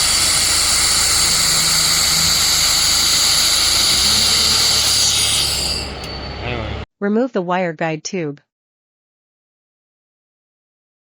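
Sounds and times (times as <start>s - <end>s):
welding head hissing rush: 0.0s - 6.1s
low machine hum: 0.0s - 6.8s.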